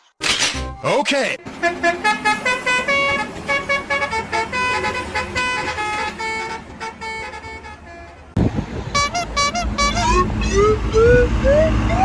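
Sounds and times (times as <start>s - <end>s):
musical air horn tune: 1.5s - 8.3s, 8.9s - 10.6s.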